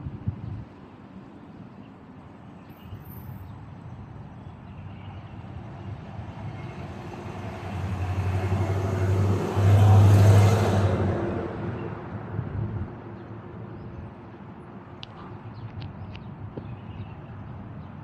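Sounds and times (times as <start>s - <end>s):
motor vehicle passing: 6.2s - 13.0s.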